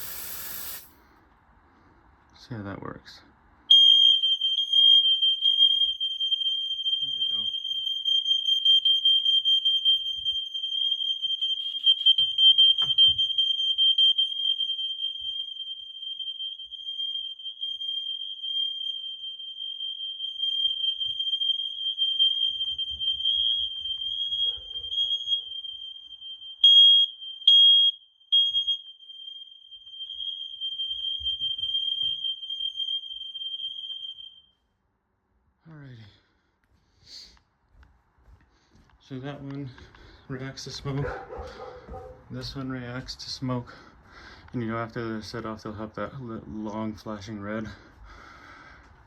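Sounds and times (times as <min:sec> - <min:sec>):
smoke alarm tone: 0:00.0 - 0:00.9, 0:03.7 - 0:34.7.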